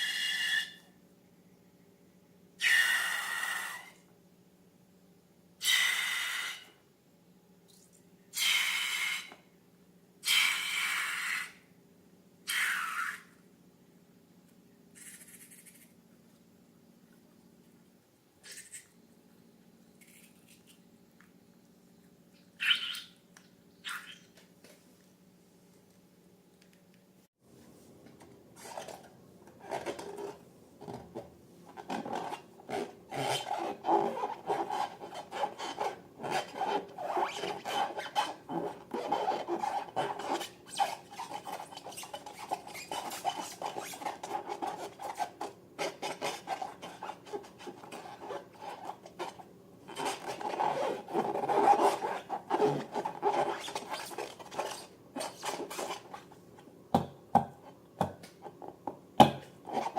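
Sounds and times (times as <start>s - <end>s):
hands rubbing balloons and slime: 31.7s - 56.4s.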